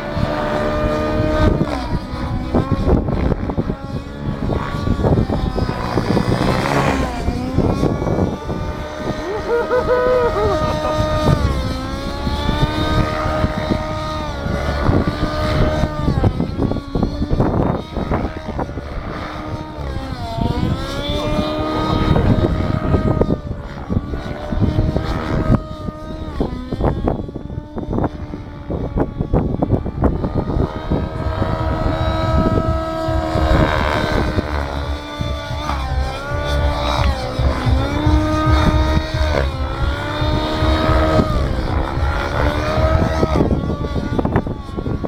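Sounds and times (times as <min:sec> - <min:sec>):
model aircraft motor whining: 0:00.0 - 0:45.0
wind rumble on microphone: 0:00.0 - 0:45.0.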